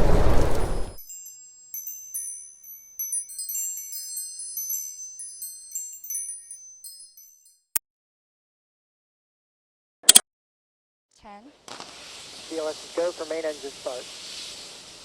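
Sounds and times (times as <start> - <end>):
high tinkling chimes: 0.6 - 7.8.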